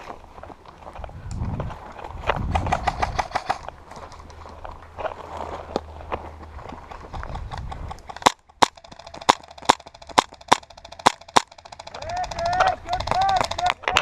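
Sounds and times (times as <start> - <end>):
airsoft gun shots: 8.1 - 13.8.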